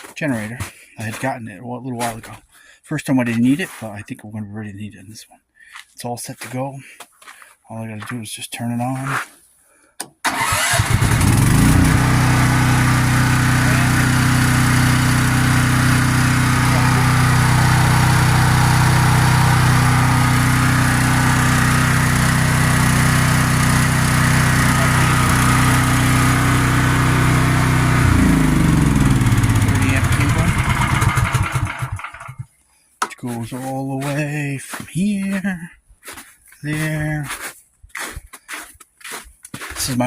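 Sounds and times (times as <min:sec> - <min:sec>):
generator engine starting and running: 0:10.0 - 0:32.5.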